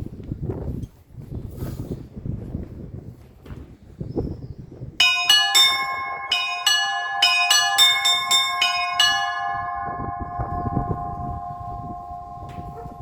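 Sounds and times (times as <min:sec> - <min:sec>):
church bells ringing: 0:05.0 - 0:13.0.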